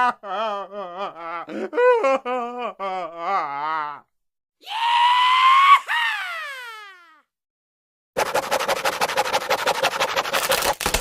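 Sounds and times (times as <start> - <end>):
cartoon scream with falling glide: 4.6 - 7.2.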